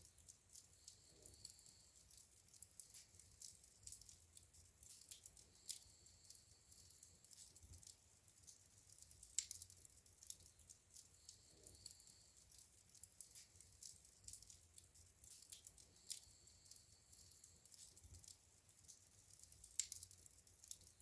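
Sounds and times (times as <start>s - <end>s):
wood fire crackling: 0.0s - 21.0s.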